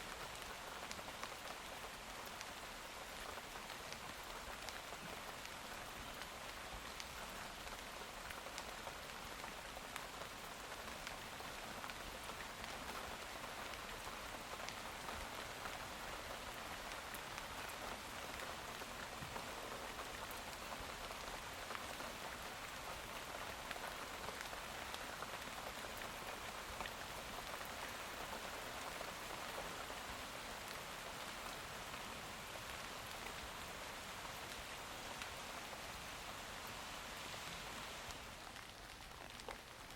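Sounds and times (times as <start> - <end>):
rain hissing: 33.0 - 39.9
raindrop ticks: 38.0 - 39.9.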